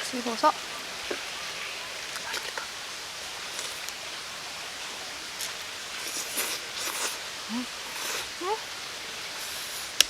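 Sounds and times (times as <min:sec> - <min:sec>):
mountain stream rushing: 0:00.0 - 0:10.0
faint clicks and rustles: 0:00.4 - 0:04.2.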